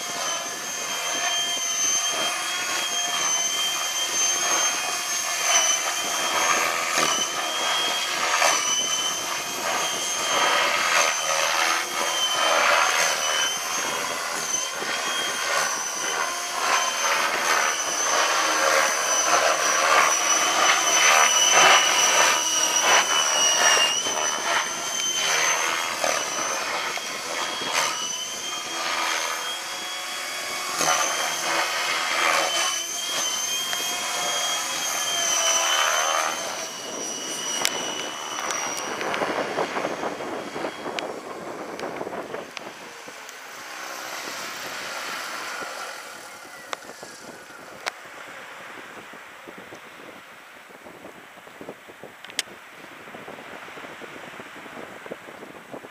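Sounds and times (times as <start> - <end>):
high-pitched whine: 0.0 - 52.5
wind buffeting microphone: 0.0 - 55.9.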